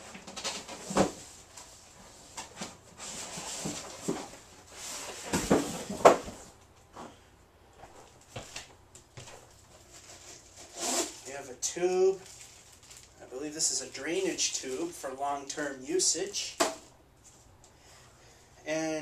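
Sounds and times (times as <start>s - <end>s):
packaging rustling: 12.1s - 13.2s.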